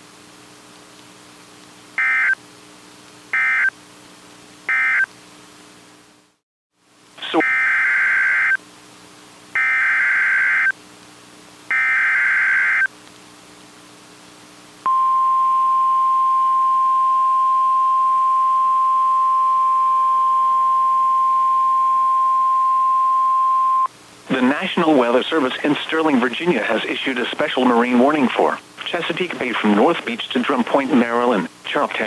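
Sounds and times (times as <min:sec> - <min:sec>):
steady single-pitch attention tone: 0:14.9 - 0:23.9.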